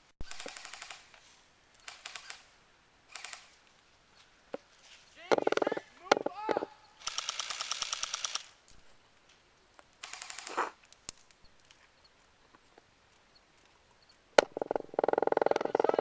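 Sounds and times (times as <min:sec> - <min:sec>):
airsoft gun rapid fire: 0:00.2 - 0:01.1, 0:07.0 - 0:08.5, 0:10.0 - 0:10.7.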